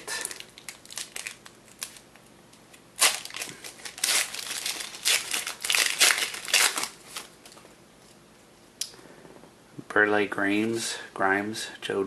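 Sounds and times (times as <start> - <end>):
plastic wrapper crinkling: 0.0 - 7.7.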